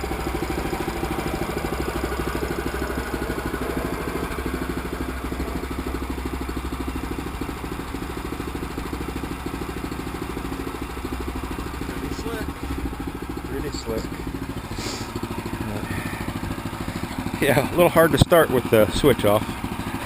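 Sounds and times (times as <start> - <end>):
small gas engine running: 0.0 - 20.0.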